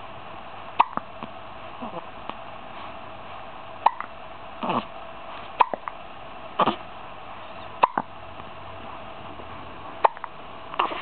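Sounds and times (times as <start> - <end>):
baby hiccups: 0.8 - 1.0, 3.8 - 4.8, 5.6 - 5.9, 6.6 - 6.8, 7.8 - 8.1, 10.0 - 11.0
baby grunting: 1.8 - 2.1, 3.9 - 4.9, 6.6 - 6.8, 10.0 - 11.0.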